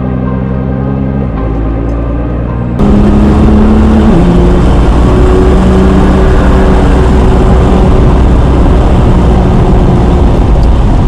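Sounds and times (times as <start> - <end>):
car engine running: 1.1 - 11.0
loud rush of noise: 2.7 - 11.0.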